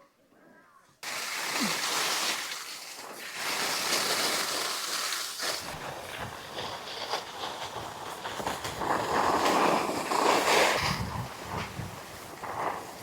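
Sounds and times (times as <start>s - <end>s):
snowboard scraping over snow: 3.0s - 13.0s
wind buffeting microphone: 5.6s - 13.0s.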